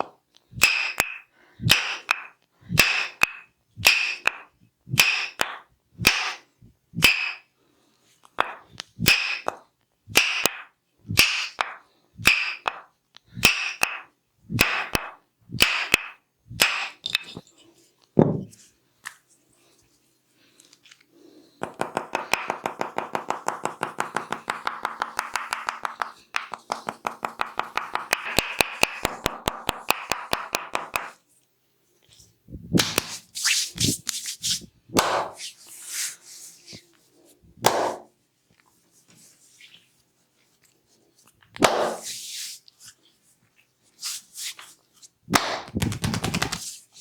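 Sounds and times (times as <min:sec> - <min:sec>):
wooden mallet knocking on wood: 0:21.6 - 0:31.1
fast light taps: 0:45.5 - 0:46.6.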